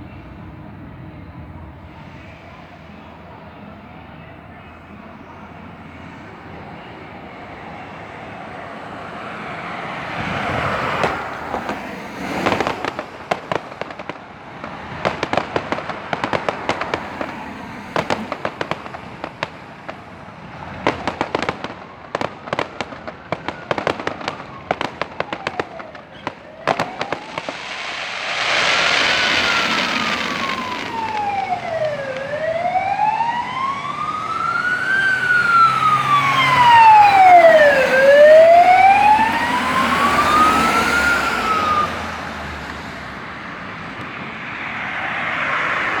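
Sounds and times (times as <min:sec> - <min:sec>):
fireworks crackling and whooshing: 0:05.7 - 0:46.0
wailing siren: 0:20.4 - 0:42.9.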